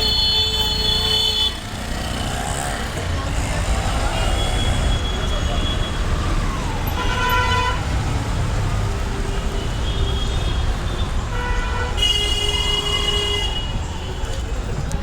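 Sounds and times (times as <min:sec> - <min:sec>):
horns tooting: 0:00.0 - 0:02.5, 0:03.3 - 0:08.1
crowd noise: 0:00.0 - 0:06.9, 0:12.0 - 0:15.0
traffic rumble: 0:00.0 - 0:15.0.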